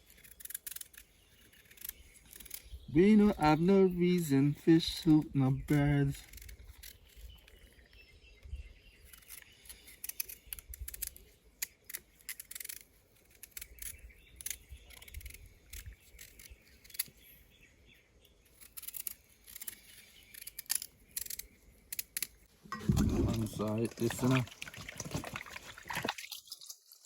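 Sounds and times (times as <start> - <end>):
knife scraping and clicking: 9.1 - 17.2, 18.6 - 22.4.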